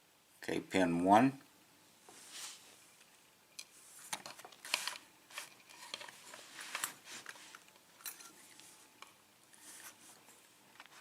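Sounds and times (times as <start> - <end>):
small tools scraping: 4.0 - 8.8.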